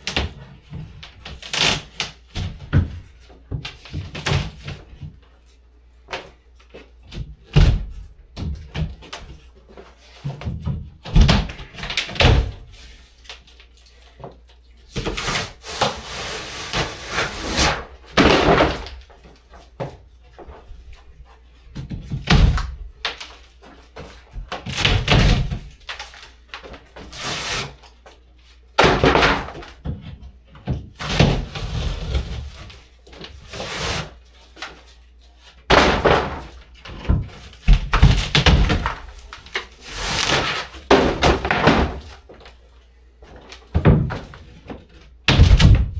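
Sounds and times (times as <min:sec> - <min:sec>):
wall material breaking and falling: 0:00.0 - 0:05.0, 0:07.1 - 0:09.4, 0:10.2 - 0:13.0, 0:14.9 - 0:20.0, 0:21.8 - 0:27.8, 0:28.8 - 0:34.8, 0:35.6 - 0:42.5, 0:43.2 - 0:45.9.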